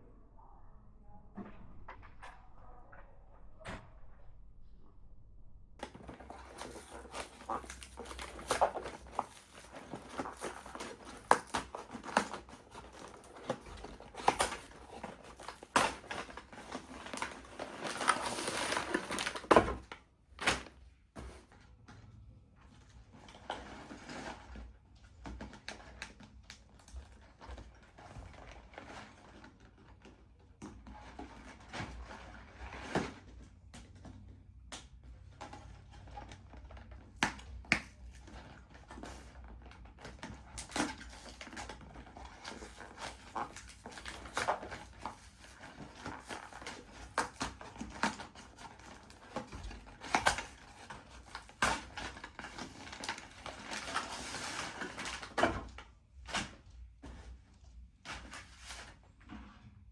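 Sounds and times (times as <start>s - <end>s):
small objects clicking and rustling: 5.8s - 19.9s.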